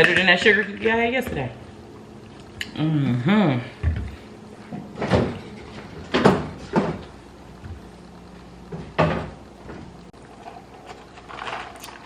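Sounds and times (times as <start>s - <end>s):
cupboard doors opening and shutting: 5.0s - 5.4s, 6.0s - 7.0s, 8.7s - 9.9s.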